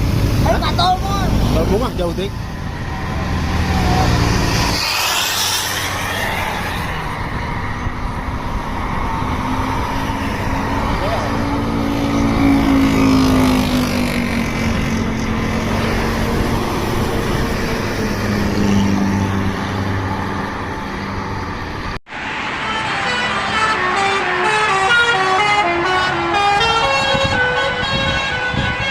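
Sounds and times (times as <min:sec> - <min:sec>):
heavy vehicle engine passing: 0:00.0 - 0:28.9
road traffic: 0:00.0 - 0:28.9
bus horn playing melody: 0:22.6 - 0:28.9.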